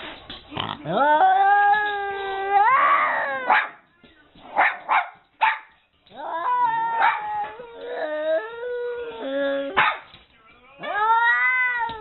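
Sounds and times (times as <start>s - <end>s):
dog whining howl: 0.9s - 3.6s, 6.1s - 9.8s, 10.8s - 12.0s
dog barking and yipping: 3.5s - 3.8s, 4.6s - 5.7s, 7.0s - 7.3s, 9.8s - 10.1s.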